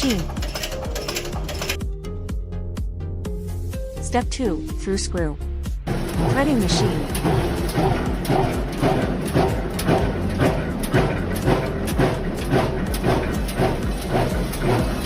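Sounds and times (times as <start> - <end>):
thread-rolling machine clatter: 0.0 - 1.8, 5.9 - 15.0.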